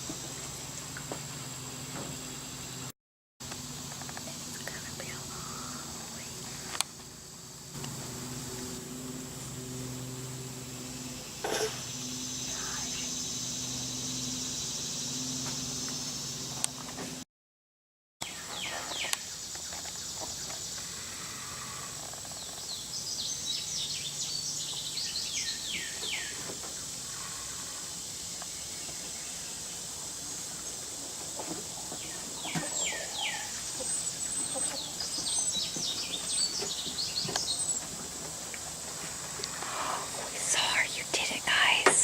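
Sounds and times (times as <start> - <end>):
insect drone: 0.0 - 17.2, 18.2 - 42.0
small birds chirping: 32.0 - 38.0.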